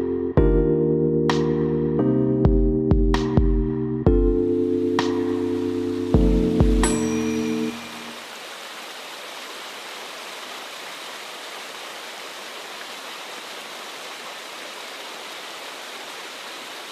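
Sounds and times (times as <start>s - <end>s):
music chord: 0.0s - 8.2s
rainfall hiss: 4.6s - 16.9s.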